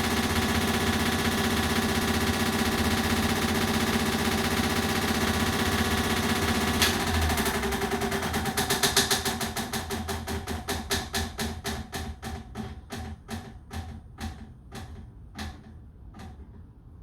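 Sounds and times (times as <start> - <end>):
fan motor hum: 0.0 - 17.0
ceiling fan clicking tick: 6.3 - 16.7.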